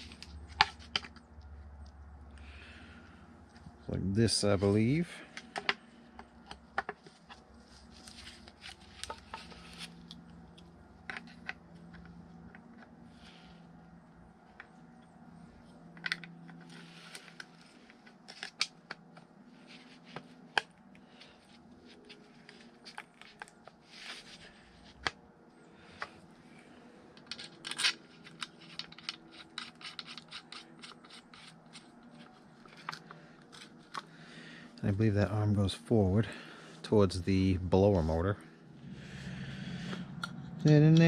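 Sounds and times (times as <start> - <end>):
faint steady hum: 0.0 - 41.0
scrapes and rustles: 6.9 - 10.2, 21.2 - 25.1
plastic parts clicking and tapping: 27.2 - 31.8.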